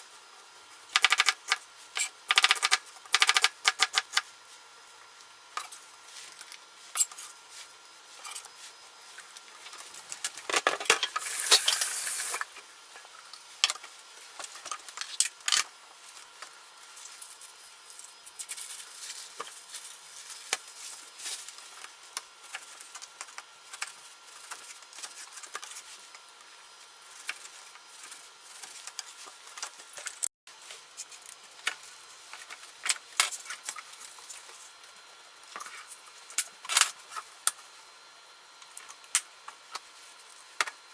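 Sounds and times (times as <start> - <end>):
utensils clicking against pans: 10.9 - 12.4
loud hiss: 11.2 - 12.5.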